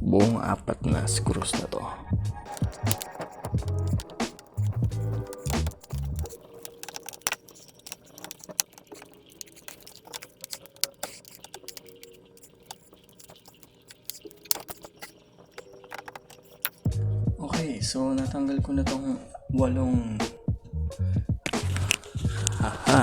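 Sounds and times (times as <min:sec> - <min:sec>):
small metallic clicks: 0:02.5 - 0:16.9.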